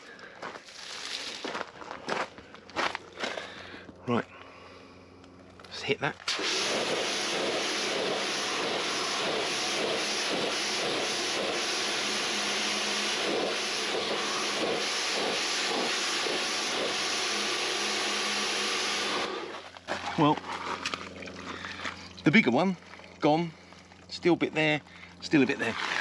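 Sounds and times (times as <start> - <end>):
pressure washer spraying water: 6.3 - 19.7.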